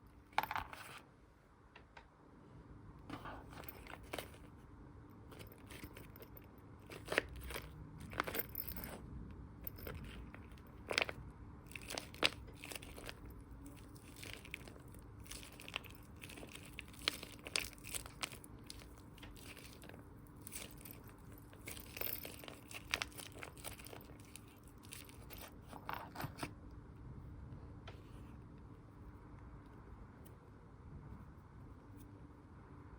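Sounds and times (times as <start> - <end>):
plastic packaging crinkling: 9.7 - 25.8.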